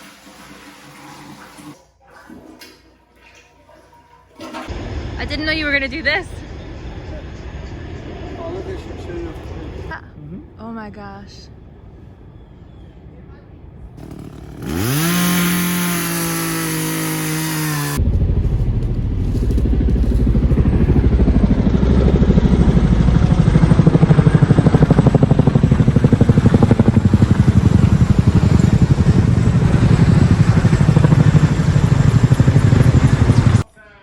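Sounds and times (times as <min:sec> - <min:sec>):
generator engine running: 0:04.7 - 0:09.9, 0:14.0 - 0:33.6.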